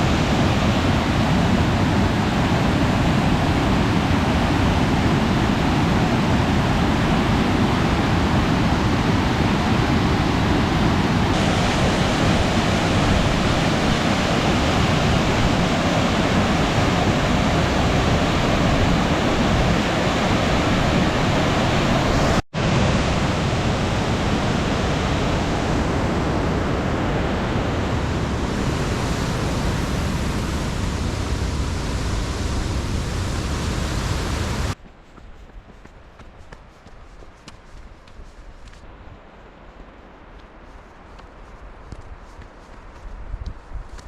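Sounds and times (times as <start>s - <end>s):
rushing falling water: 0.0s - 34.8s.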